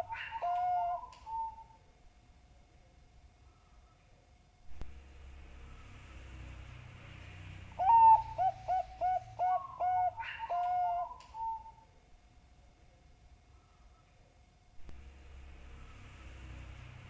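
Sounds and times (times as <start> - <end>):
dove cooing: 0.0 - 1.8, 7.8 - 11.8.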